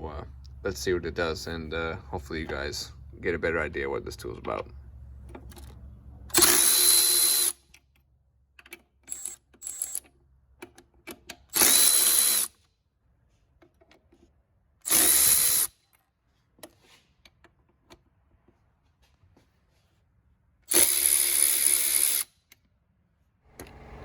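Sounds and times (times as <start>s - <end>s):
electric ratchet motor whine: 6.3s - 7.6s, 9.1s - 10.0s, 11.6s - 12.5s, 14.9s - 15.7s, 20.7s - 22.3s
tool trigger blips and clicks: 9.1s - 10.1s.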